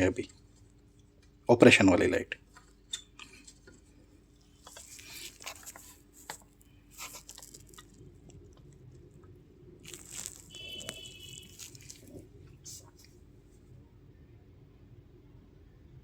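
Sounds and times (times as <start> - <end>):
faint steady hum: 0.0 - 16.0
handling noise crackles and rustles: 2.5 - 13.2.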